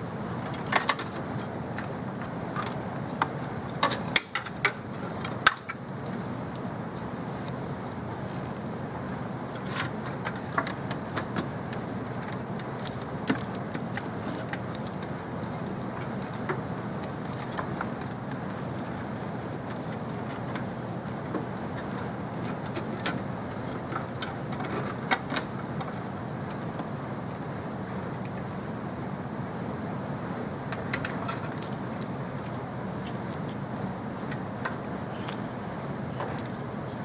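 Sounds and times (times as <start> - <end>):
steady background hiss: 0.0 - 37.0
sharp clicks and light knocks: 0.4 - 26.9.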